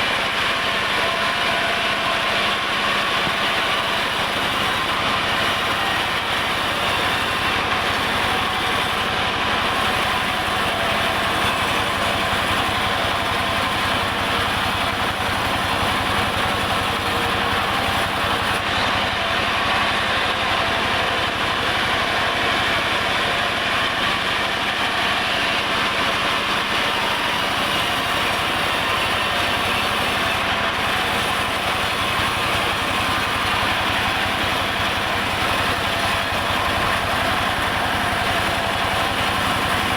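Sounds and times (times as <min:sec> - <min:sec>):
sawmill saw and engine running: 0:00.0 - 0:39.9.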